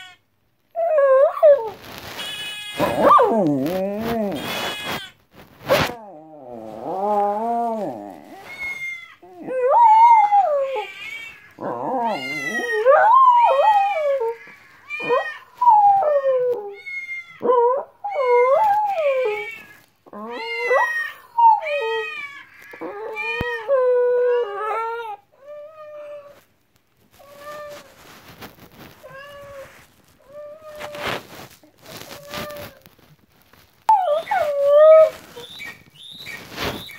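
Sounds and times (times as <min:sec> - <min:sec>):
dog howling and whining: 0:00.7 - 0:01.9, 0:02.7 - 0:04.6, 0:05.8 - 0:26.4, 0:33.9 - 0:36.9.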